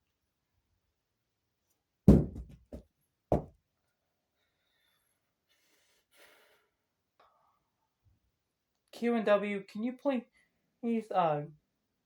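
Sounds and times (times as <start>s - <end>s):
dull knocks on something hard: 2.1s - 3.5s.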